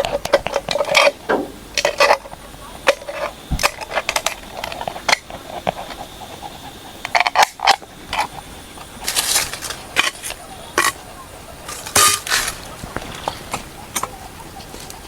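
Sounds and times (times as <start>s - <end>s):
cookware clinking and scraping: 9.0s - 14.2s.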